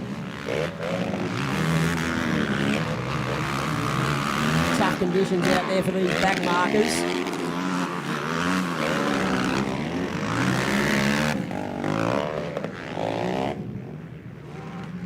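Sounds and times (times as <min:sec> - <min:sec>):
quad bike engines revving: 0:00.0 - 0:15.0.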